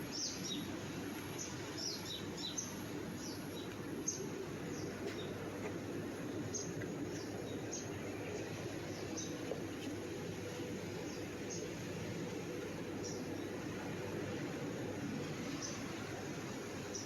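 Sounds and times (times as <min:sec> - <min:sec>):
small birds chirping: 0:00.0 - 0:11.8.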